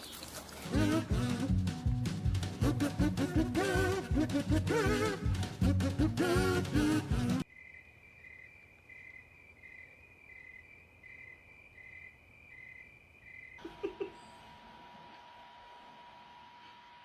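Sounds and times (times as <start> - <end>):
music: 0.6 - 7.4
insects trilling: 7.5 - 13.6.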